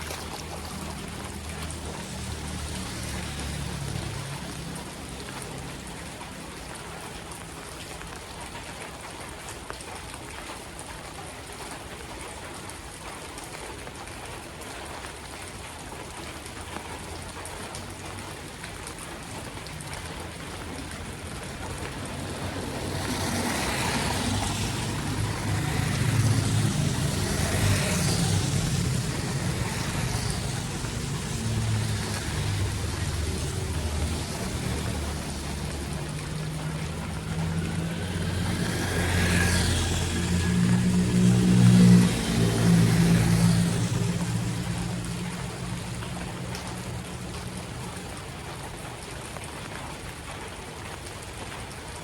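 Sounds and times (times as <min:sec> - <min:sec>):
rain: 0:00.0 - 0:52.0
running floodwater: 0:00.0 - 0:52.0
water splashing: 0:00.0 - 0:52.0
vehicle engine hum: 0:20.2 - 0:47.7.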